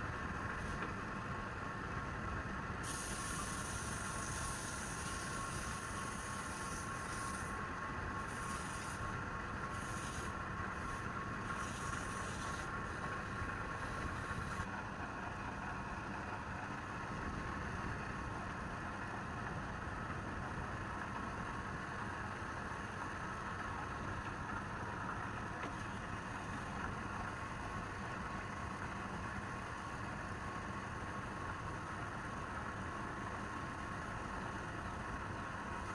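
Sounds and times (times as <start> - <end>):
short bursts of high hiss: 2.8 - 7.5.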